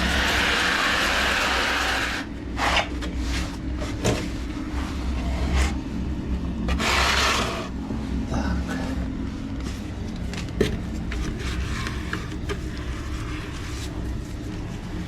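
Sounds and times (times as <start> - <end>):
compound scraping on wall: 0.0 - 7.8, 10.5 - 14.3.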